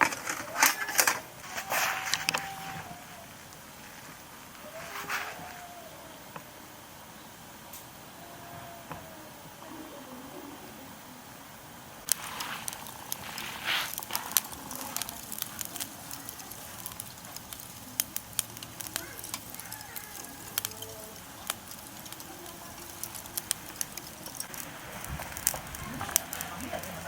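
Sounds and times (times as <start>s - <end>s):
wood fire crackling and popping: 0.0s - 5.6s, 12.0s - 27.0s
low steady hiss: 0.0s - 27.0s.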